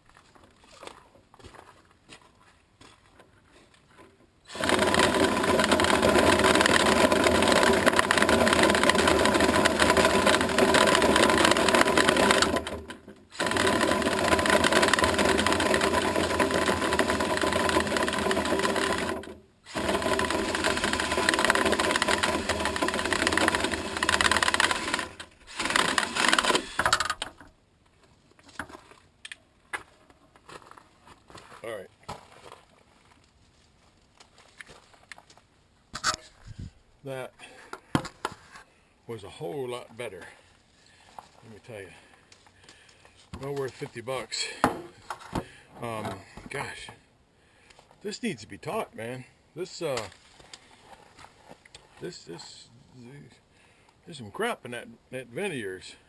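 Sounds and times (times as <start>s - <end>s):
power drill spinning brush in duct: 4.5s - 27.0s.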